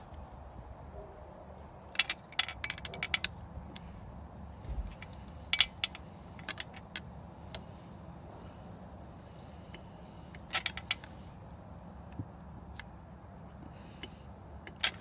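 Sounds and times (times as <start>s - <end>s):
spanner clinking on bolt: 5.5s - 7.6s, 14.7s - 15.0s.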